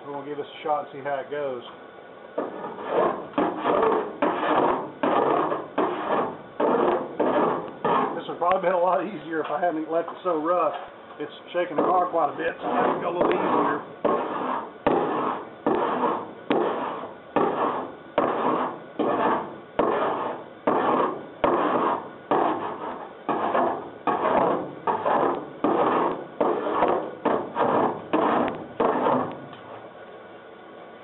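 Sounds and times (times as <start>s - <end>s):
file rasping across metal: 2.4s - 8.3s, 11.7s - 29.4s.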